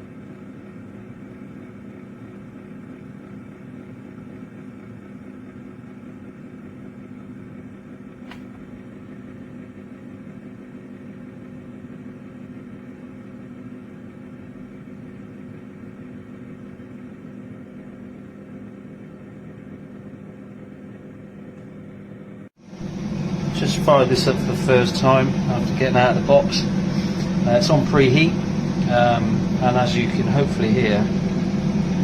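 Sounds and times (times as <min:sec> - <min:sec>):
air fryer fan and motor hum: 0:00.0 - 0:32.0.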